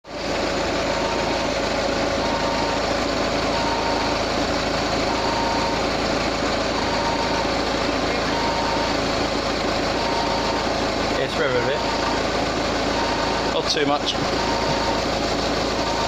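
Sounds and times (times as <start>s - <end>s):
car engine idling: 0.0s - 16.0s
high-pitched beep: 6.8s - 7.5s, 8.2s - 9.0s, 11.6s - 12.2s, 14.4s - 15.0s.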